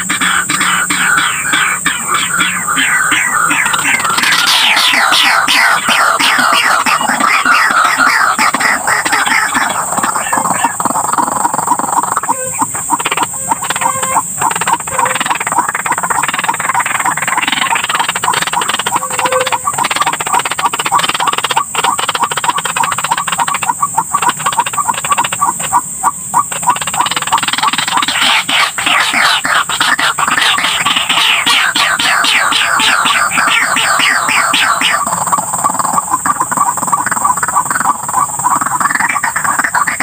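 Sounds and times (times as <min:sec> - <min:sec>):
birds croaking rapidly: 0:00.0 - 0:40.0
steady high hiss: 0:00.0 - 0:40.0.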